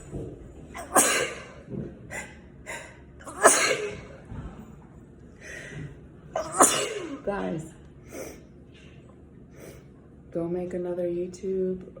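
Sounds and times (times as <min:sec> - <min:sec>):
person sneezing: 0:00.8 - 0:01.6, 0:02.2 - 0:04.1, 0:06.4 - 0:07.2.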